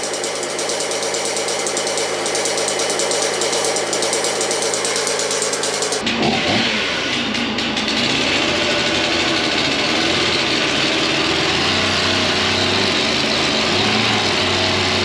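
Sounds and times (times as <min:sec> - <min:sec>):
machine rattling over a hum: 0:00.0 - 0:06.0
engine-like running sound: 0:00.0 - 0:06.1.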